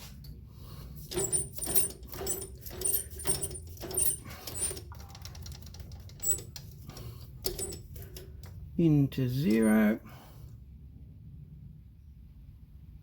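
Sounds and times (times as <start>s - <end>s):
threading die scraping metal: 1.0s - 8.6s.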